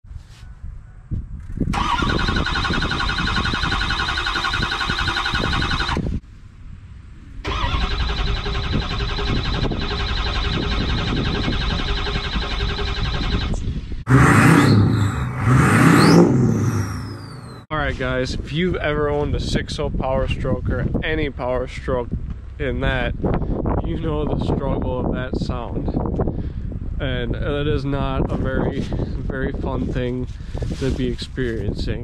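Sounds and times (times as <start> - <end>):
engine cranking without starting: 1.7 - 6.0, 7.4 - 17.7
loud different sound: 7.4 - 18.1.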